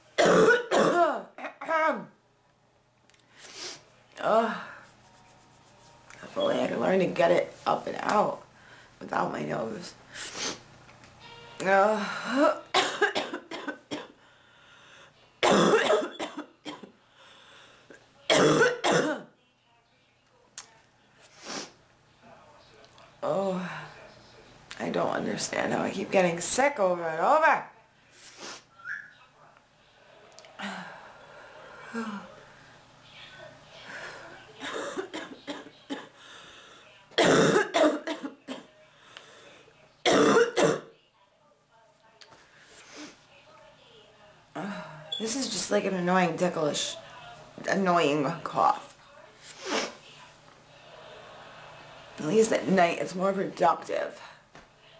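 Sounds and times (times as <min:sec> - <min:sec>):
woman coughing: 0:00.2 - 0:02.1, 0:12.3 - 0:14.2, 0:15.4 - 0:17.0, 0:18.3 - 0:19.3, 0:34.6 - 0:36.2, 0:37.2 - 0:38.7, 0:40.0 - 0:40.9.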